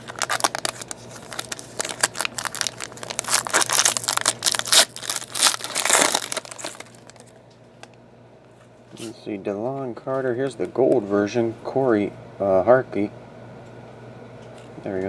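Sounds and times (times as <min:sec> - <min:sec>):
foil wrapper crinkling: 0:00.0 - 0:07.4.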